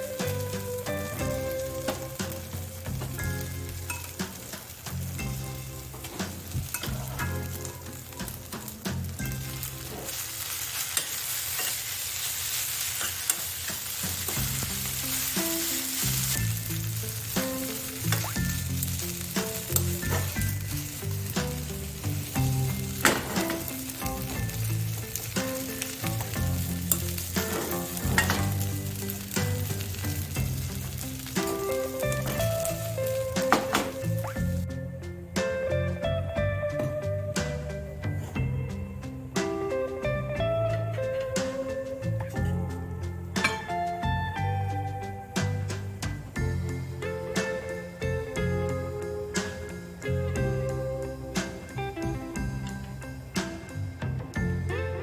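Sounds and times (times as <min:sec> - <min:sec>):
curry sizzling in a pan: 0:00.0 - 0:55.0
utensil clicking against pan: 0:17.4 - 0:34.2.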